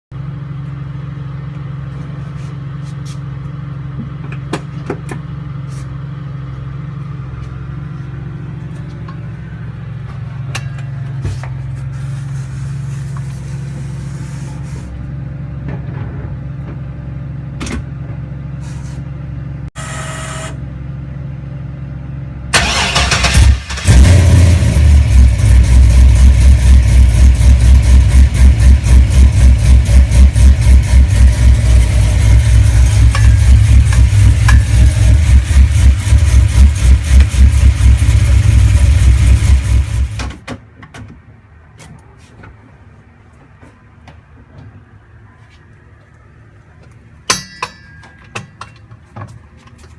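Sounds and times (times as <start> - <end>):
car engine drone: 0.1 - 40.5
sharp metallic ping: 33.1 - 33.7, 47.3 - 48.6.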